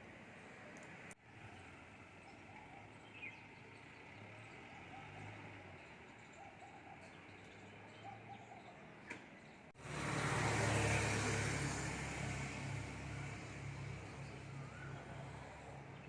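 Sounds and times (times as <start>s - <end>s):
vehicle engine and road noise: 0.0s - 16.0s
bird chirp: 1.5s - 9.7s.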